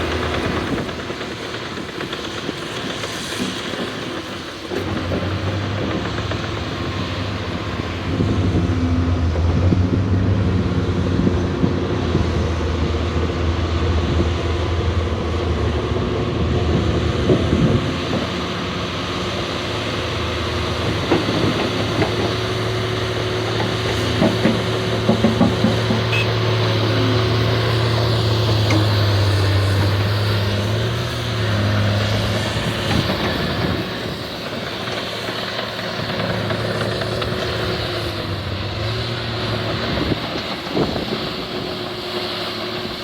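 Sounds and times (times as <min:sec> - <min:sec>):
bulldozer diesel engine: 0:00.0 - 0:43.0.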